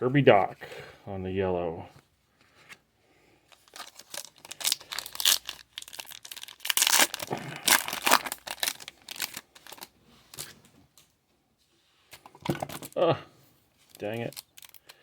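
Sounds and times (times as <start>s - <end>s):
wrapper tearing and crinkling: 3.6s - 10.6s, 13.9s - 15.0s.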